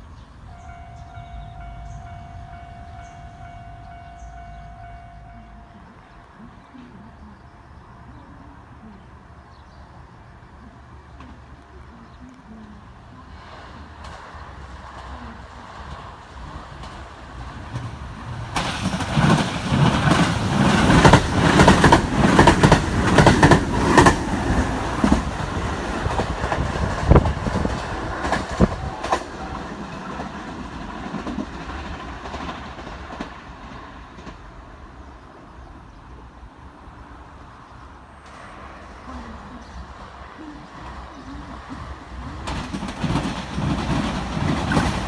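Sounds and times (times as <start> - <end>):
train wheels clattering over rail joints: 15.9 - 35.1, 41.8 - 45.0.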